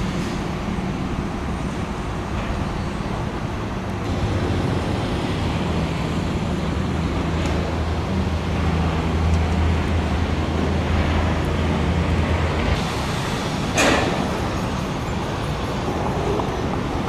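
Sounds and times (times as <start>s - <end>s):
large engine running: 0.0s - 17.0s
road noise: 0.0s - 17.0s.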